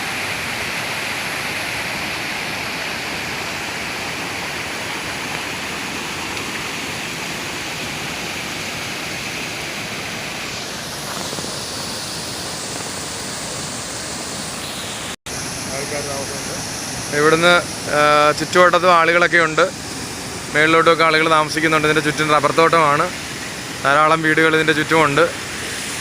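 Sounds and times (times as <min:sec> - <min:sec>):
stream water rushing: 0:00.0 - 0:26.0.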